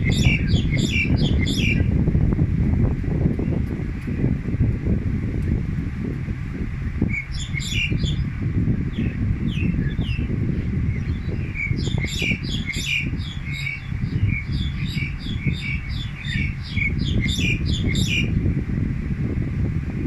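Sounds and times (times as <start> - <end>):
songbird calling: 0.0 - 1.9, 7.1 - 8.3, 8.9 - 18.4
steady low rumble: 0.0 - 20.0.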